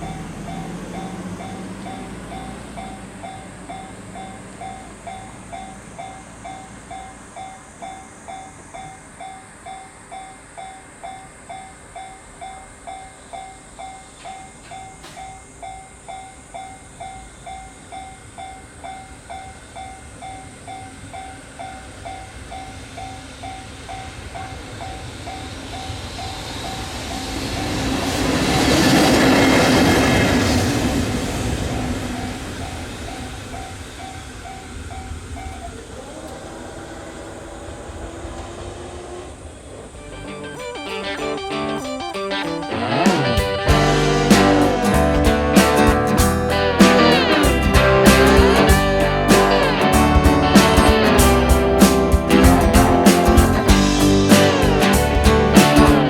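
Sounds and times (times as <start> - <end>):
level crossing warning bell dinging: 0.0 - 27.9, 40.0 - 45.6
locomotive passing: 0.0 - 56.0.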